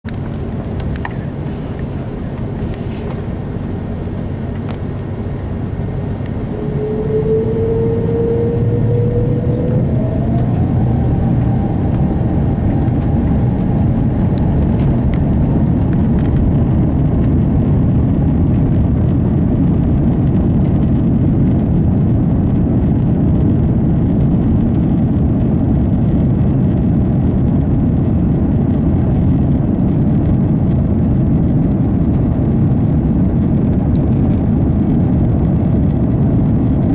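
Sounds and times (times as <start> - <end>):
runway rumble: 0.0 - 36.9
jet engines spooling up: 0.1 - 19.8
jet engine whine rising in pitch: 0.1 - 29.8
steady jet roar: 0.1 - 36.9.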